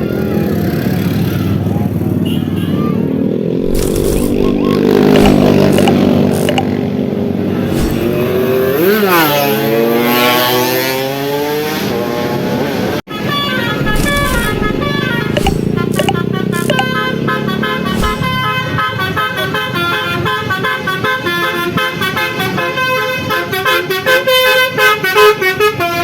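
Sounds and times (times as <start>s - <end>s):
multi-tone bus horn tune: 18.8s - 26.0s.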